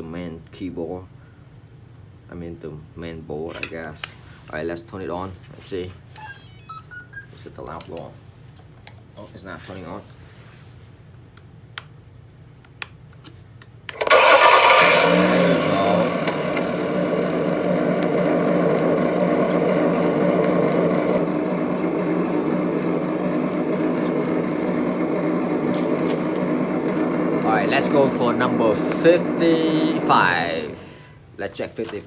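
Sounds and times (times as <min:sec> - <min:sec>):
simulated engine idling from speaker: 0:14.6 - 0:31.0.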